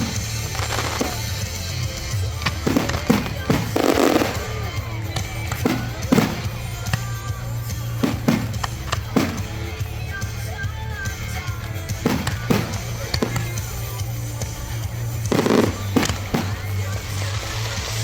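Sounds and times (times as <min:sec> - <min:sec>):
fireworks bursting: 0:00.0 - 0:18.0
music playing: 0:00.0 - 0:18.0.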